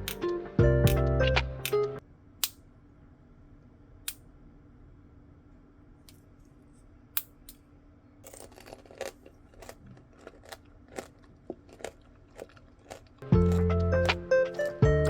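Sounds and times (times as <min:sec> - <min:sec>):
background music: 0:00.0 - 0:02.0, 0:13.2 - 0:15.0
candy shell crunching: 0:08.3 - 0:15.0.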